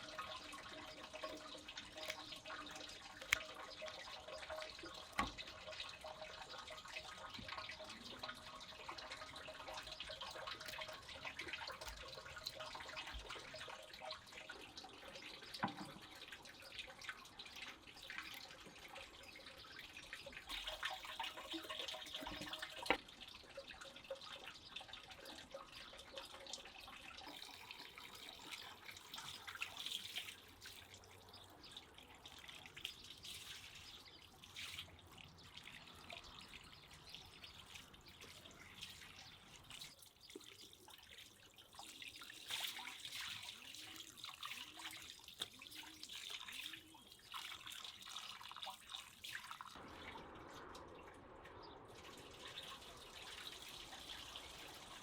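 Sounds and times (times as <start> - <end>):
tap water running into sink: 0.0 - 30.3.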